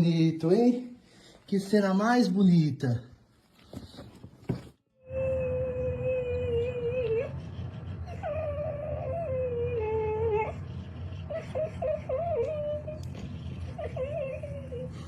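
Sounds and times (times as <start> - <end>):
animal whining: 5.0 - 15.0.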